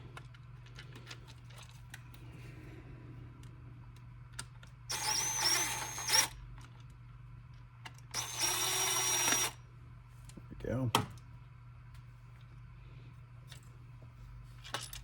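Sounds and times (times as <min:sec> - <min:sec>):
power driver motor whine: 0:04.9 - 0:06.4, 0:08.1 - 0:09.6.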